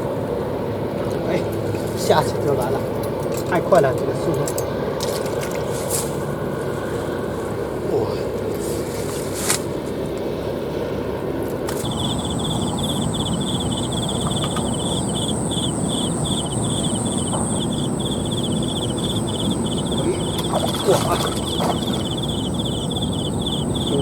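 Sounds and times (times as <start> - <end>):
insects chirping in pulses: 11.7 - 24.0
rushing background noise: 11.8 - 24.0
steady high whine: 11.8 - 24.0.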